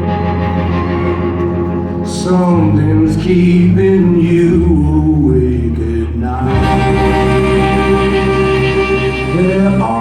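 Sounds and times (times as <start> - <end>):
live rock band: 0.0 - 10.0
person singing: 0.1 - 10.0
sustained bass note: 2.7 - 10.0.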